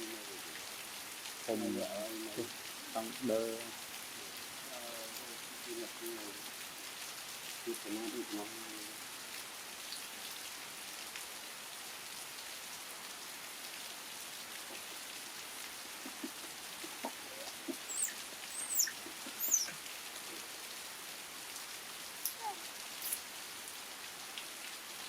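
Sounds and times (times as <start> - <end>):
rain falling: 0.0 - 25.0
high squeaky gliding calls: 16.0 - 19.8.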